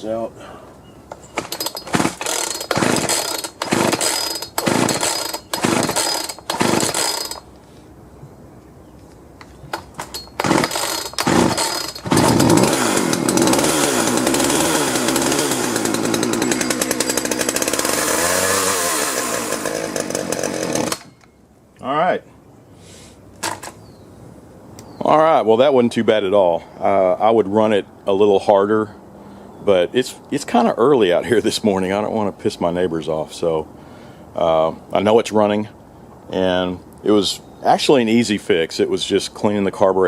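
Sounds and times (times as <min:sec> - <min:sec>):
chainsaw starter rope pulls: 0:01.2 - 0:07.5, 0:09.7 - 0:21.2
chainsaw engine running: 0:01.4 - 0:07.4, 0:10.0 - 0:21.1.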